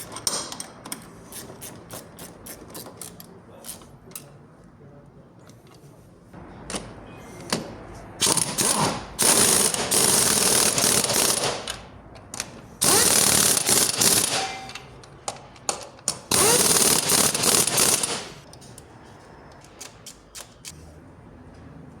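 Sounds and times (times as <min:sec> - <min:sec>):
power wrench running: 0:08.2 - 0:11.8, 0:12.8 - 0:14.8, 0:16.2 - 0:18.4
tool clicks: 0:19.5 - 0:20.8.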